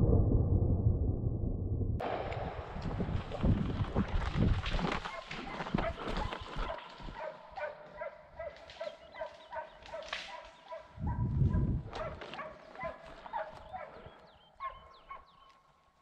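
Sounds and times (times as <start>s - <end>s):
low rumble: 0.0s - 4.6s
hounds baying: 5.1s - 15.6s.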